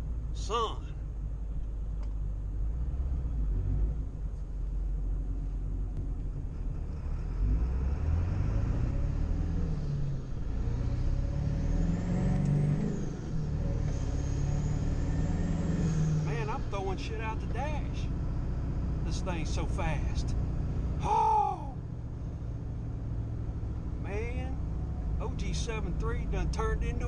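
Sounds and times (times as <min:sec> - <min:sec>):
diesel engine accelerating: 0:00.0 - 0:27.0.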